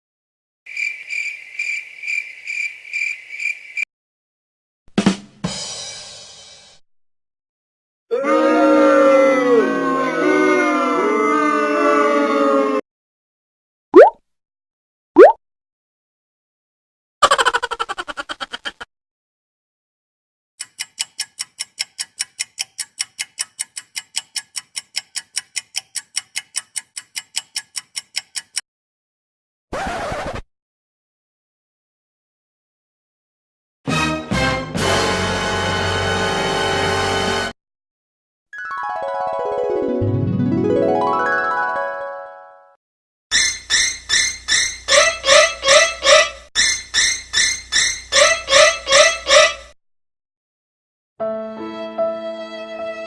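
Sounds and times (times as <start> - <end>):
cricket chirping: 0.7 - 3.8
clock ticking: 20.6 - 28.6.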